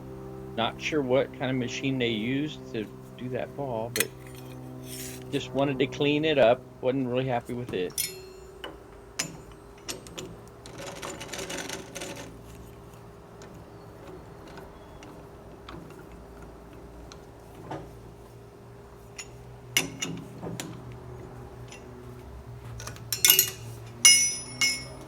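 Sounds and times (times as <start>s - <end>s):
scraping: 3.8s - 5.5s, 7.5s - 10.0s, 18.8s - 25.0s.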